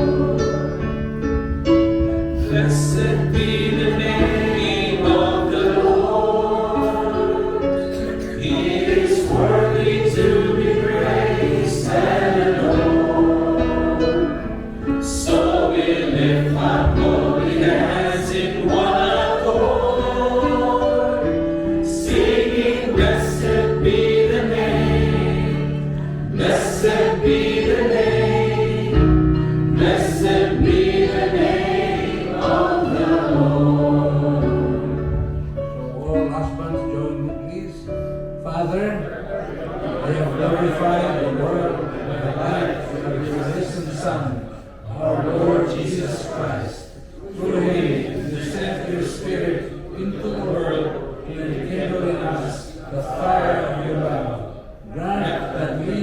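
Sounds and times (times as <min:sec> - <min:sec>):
choir singing: 0:00.0 - 0:36.7, 0:39.5 - 0:56.0
instrumental accompaniment: 0:00.0 - 0:39.5.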